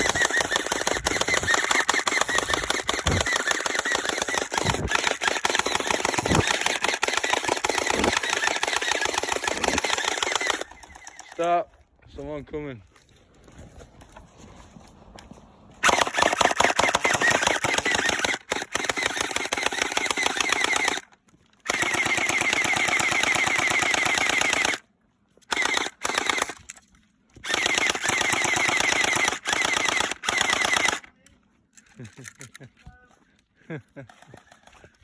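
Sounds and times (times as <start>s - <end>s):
gel blaster firing full auto: 0.0s - 11.4s, 15.8s - 21.1s, 21.7s - 24.8s, 25.5s - 26.6s, 27.4s - 31.1s.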